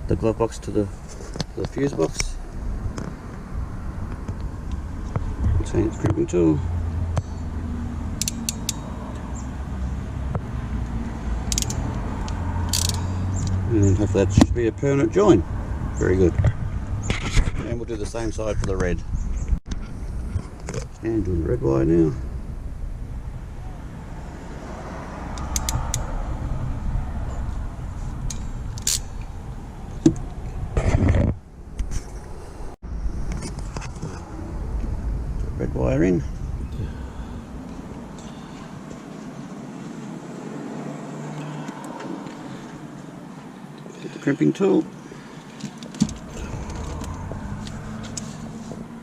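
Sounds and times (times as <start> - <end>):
crimping tool metallic clicks: 8.2 - 8.8.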